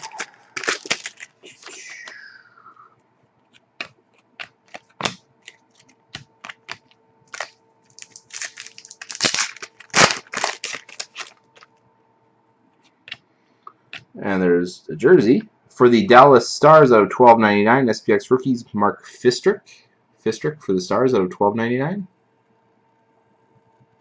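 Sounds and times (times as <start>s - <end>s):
foil wrapper tearing: 0.0s - 2.1s, 3.8s - 11.7s
faint steady hum: 0.0s - 24.0s
cards snapping and clicking: 3.5s - 11.3s.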